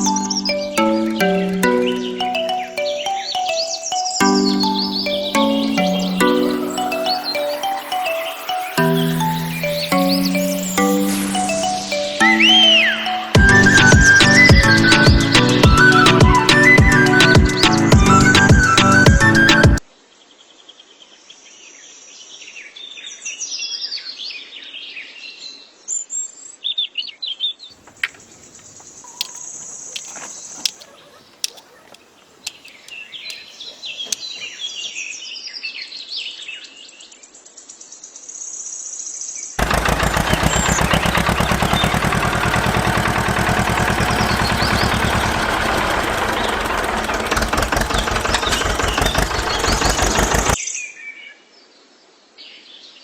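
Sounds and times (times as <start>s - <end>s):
birds chirping: 0.0s - 19.8s, 27.8s - 35.2s, 39.6s - 50.6s
sharp clicks: 27.8s - 34.5s, 39.6s - 50.6s
small motor running: 39.6s - 50.6s.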